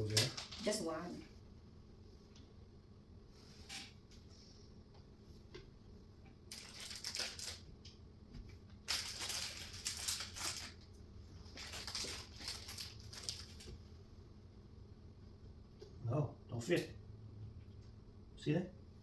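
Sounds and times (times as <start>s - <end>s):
small parts rattling and clinking: 6.5s - 7.6s, 8.9s - 10.8s, 11.5s - 13.7s.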